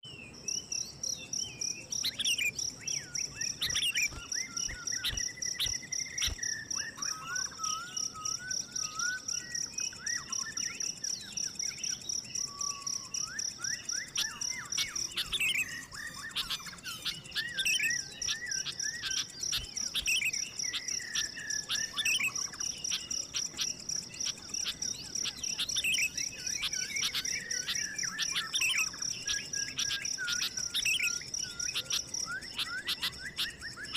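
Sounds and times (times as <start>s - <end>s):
birds chirping: 0.0s - 33.9s
pulsing insect trill: 1.6s - 33.9s.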